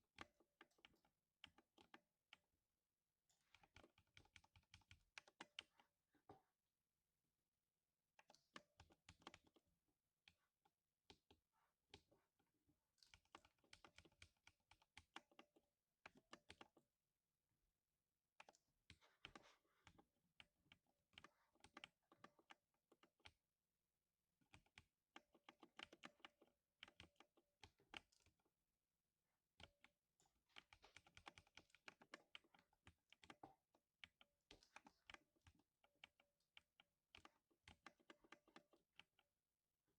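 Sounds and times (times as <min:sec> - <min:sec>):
mechanical keyboard typing: 0:24.5 - 0:28.4, 0:30.5 - 0:39.3.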